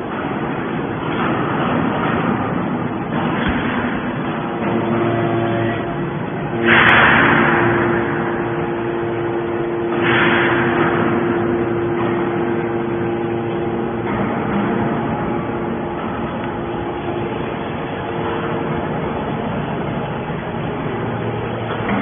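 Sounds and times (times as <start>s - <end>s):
motor and pump hum: 0.0s - 22.0s
rushing noise surges: 6.5s - 14.1s.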